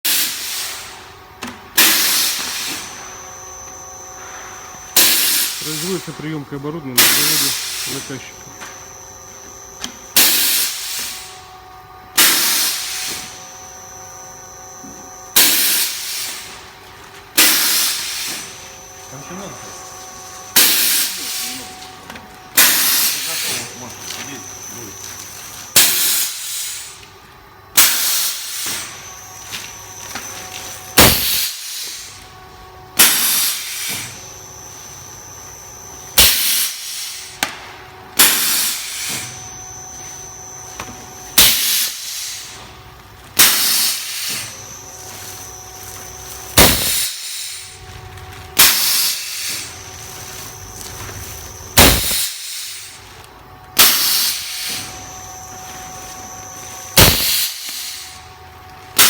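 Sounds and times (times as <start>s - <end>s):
machine whine: 0.1s - 59.0s
air hiss: 5.0s - 6.1s, 7.0s - 8.3s, 22.6s - 23.9s, 31.0s - 32.2s, 46.5s - 47.8s, 51.8s - 53.0s, 53.8s - 55.0s, 57.0s - 58.2s
guillotine knife bang: 31.0s - 31.6s, 46.6s - 47.2s, 51.8s - 52.4s, 57.0s - 57.6s.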